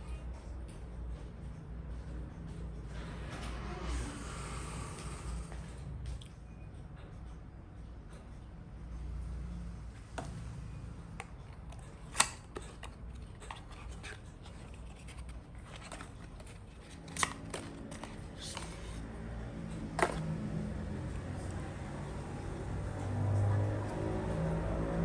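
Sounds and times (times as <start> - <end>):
packaging clicks and scraping: 11.2 - 19.1.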